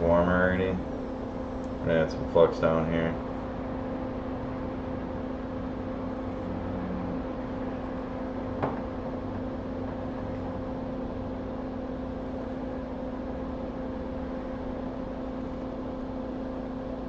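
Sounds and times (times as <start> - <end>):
electric blower fan whirring: 0.0 - 17.0.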